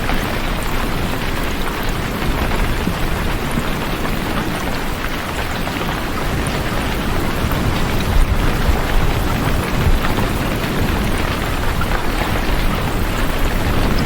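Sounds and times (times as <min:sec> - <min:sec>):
heavy rain falling: 0:00.0 - 0:14.0.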